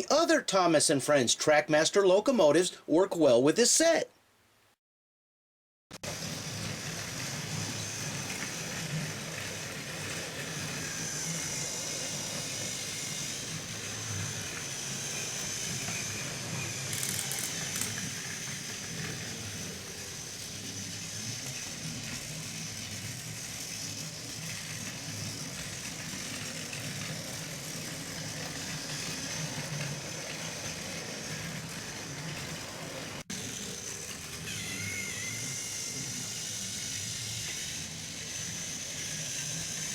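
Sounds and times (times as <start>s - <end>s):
toy train motor whine: 6.0s - 39.9s
plastic wheels rattling on track: 16.9s - 36.0s.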